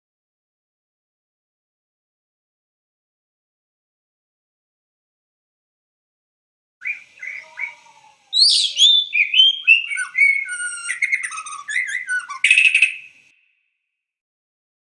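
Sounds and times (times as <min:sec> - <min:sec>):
bird chirping and calling: 0:06.8 - 0:13.2.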